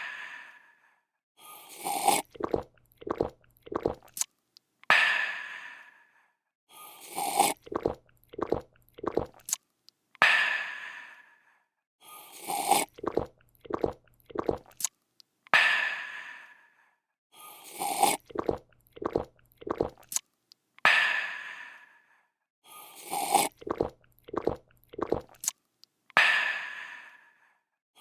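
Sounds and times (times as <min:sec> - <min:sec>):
person slurping a drink: 0:01.6 - 0:04.2, 0:06.9 - 0:09.6, 0:12.2 - 0:14.9, 0:17.6 - 0:20.2, 0:22.8 - 0:25.6
gulping: 0:01.8 - 0:04.2, 0:07.1 - 0:09.5, 0:12.4 - 0:14.8, 0:17.7 - 0:20.2, 0:23.0 - 0:25.5.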